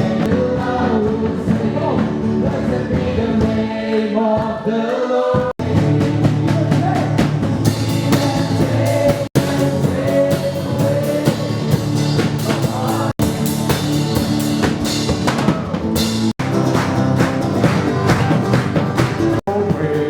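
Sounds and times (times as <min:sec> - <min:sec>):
drum kit beat: 0:05.4 - 0:20.0
worship band playing: 0:05.6 - 0:20.0.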